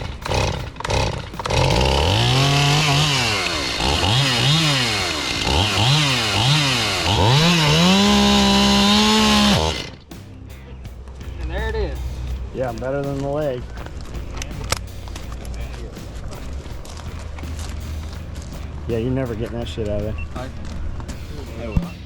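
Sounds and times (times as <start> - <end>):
chainsaw engine revving: 0.0 - 10.1.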